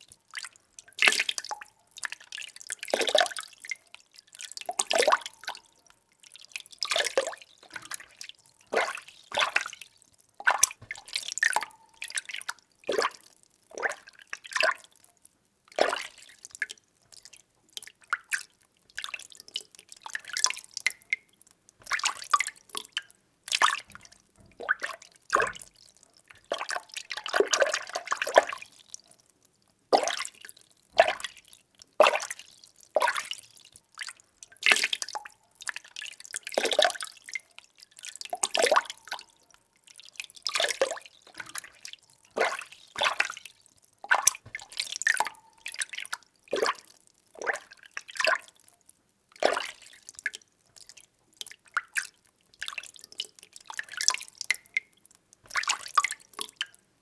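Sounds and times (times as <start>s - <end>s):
water sloshing when stirred: 6.8s - 13.3s, 21.8s - 28.6s, 40.4s - 48.5s.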